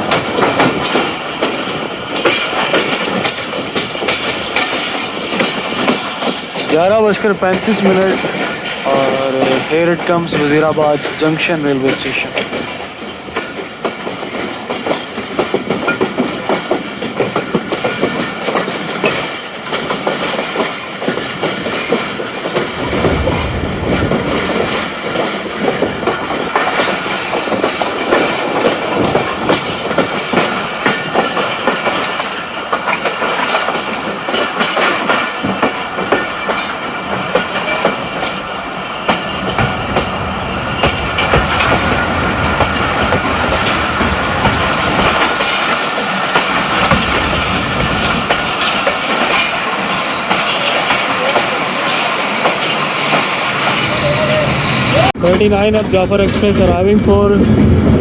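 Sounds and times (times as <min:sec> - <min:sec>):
wheels squealing on rails: 0:00.0 - 0:56.7
train wheels clattering over joints: 0:00.0 - 0:58.0
heavy low rumble: 0:22.8 - 0:25.1.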